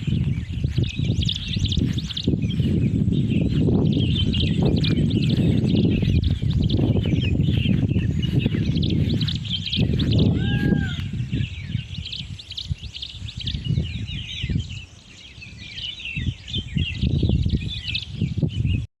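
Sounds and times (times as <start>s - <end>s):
small birds chirping: 0.0s - 18.9s
short pitched bird call: 10.0s - 11.2s.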